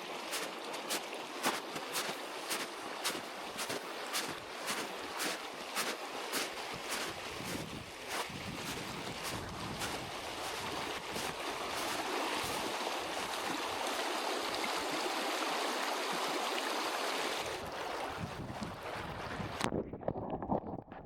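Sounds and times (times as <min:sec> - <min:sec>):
mountain stream rushing: 0:00.0 - 0:18.1
footsteps in snow: 0:00.3 - 0:13.5.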